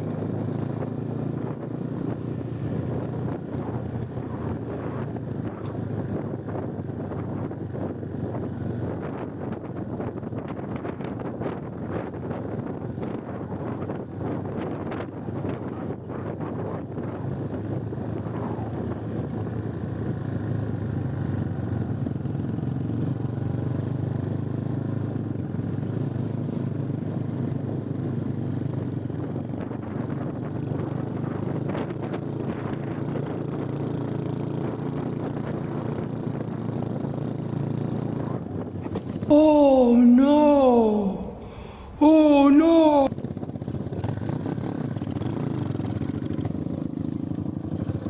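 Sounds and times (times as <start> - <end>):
motorcycle engine cruising: 0.0 - 39.6, 43.1 - 48.0
road noise: 0.0 - 48.0
wind noise: 1.3 - 19.4.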